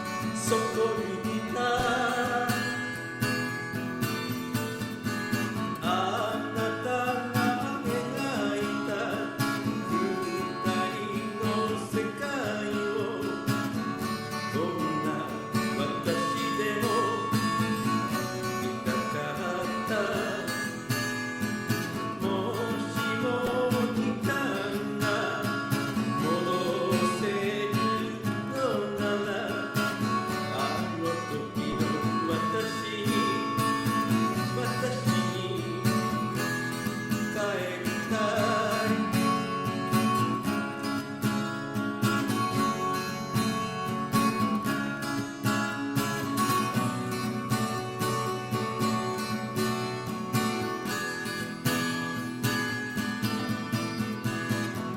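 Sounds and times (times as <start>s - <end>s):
person singing: 0.0s - 3.1s, 5.8s - 13.6s, 14.2s - 20.8s, 21.9s - 39.6s
acoustic guitar: 0.0s - 54.9s.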